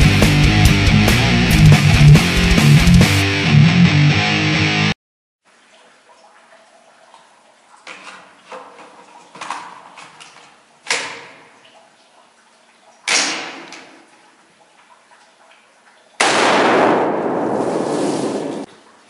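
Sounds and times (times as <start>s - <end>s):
sharp gunshot-like reports: 16.2s - 18.7s.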